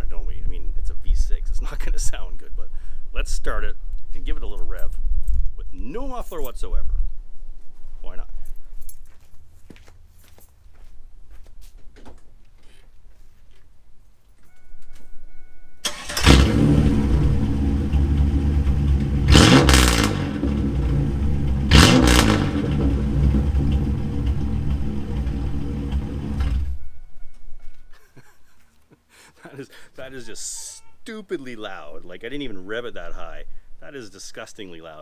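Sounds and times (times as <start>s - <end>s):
loud car engine idling and revving: 16.1s - 26.8s.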